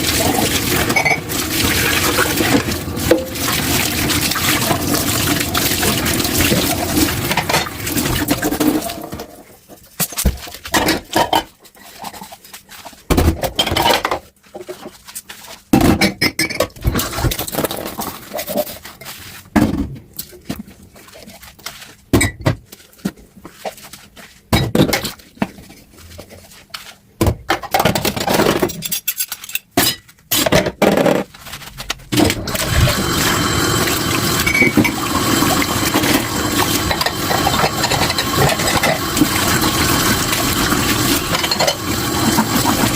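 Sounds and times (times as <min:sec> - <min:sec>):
tap water running: 0:00.0 - 0:09.4, 0:32.2 - 0:42.9
dishes clinking in sink: 0:00.3 - 0:01.4, 0:02.0 - 0:03.5, 0:36.0 - 0:39.2, 0:41.2 - 0:42.9.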